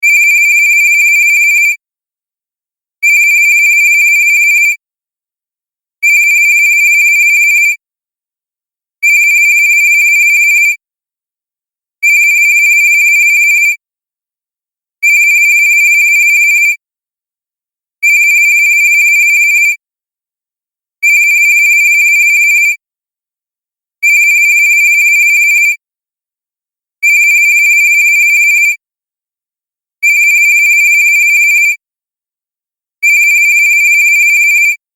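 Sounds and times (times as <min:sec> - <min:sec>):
electronic phone ringtone: 0:00.1 - 0:01.8, 0:03.2 - 0:04.7, 0:06.2 - 0:07.8, 0:09.2 - 0:10.8, 0:12.2 - 0:13.7, 0:30.2 - 0:31.7, 0:33.2 - 0:34.7.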